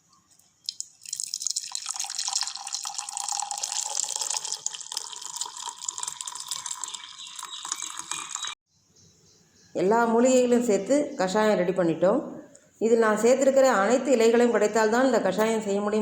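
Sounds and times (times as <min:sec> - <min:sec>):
liquid pouring into a glass: 0:00.6 - 0:08.6.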